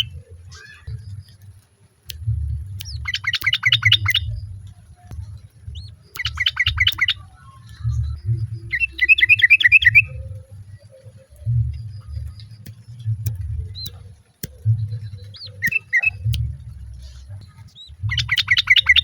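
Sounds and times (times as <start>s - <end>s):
bird chattering calls: 0.0s - 1.6s, 2.8s - 4.7s, 5.6s - 19.0s
low rumble: 0.0s - 19.0s.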